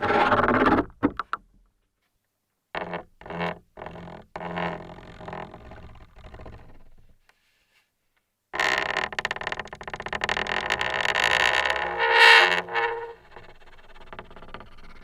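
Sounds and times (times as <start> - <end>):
creaking: 2.7 - 7.1, 8.6 - 15.0.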